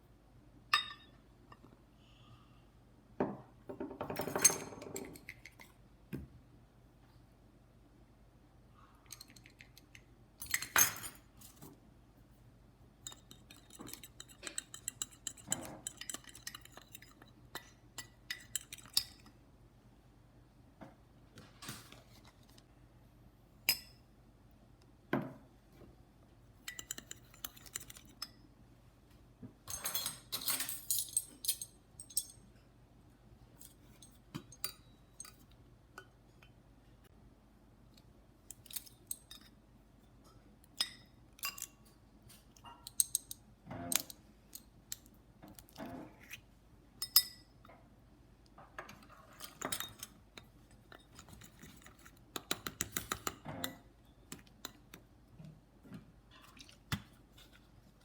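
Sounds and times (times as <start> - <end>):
cutlery and crockery clinking: 29.7 - 32.4.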